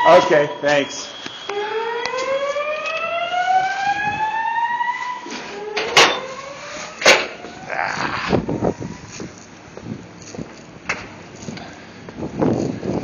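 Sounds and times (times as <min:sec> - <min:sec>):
fire alarm whoop tone: 0:00.0 - 0:09.2.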